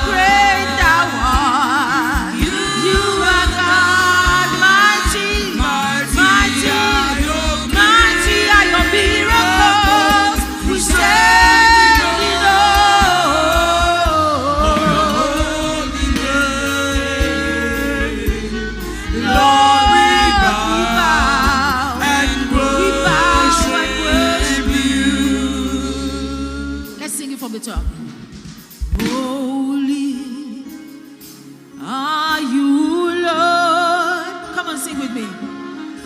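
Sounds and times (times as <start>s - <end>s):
singer with vibrato: 0.0s - 27.9s
band accompaniment: 0.0s - 32.5s.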